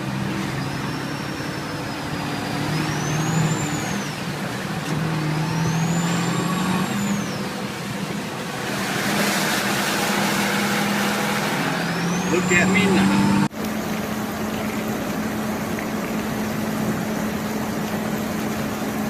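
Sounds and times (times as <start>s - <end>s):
truck engine running: 0.0s - 19.0s
high whistle: 0.6s - 4.2s, 5.4s - 7.5s.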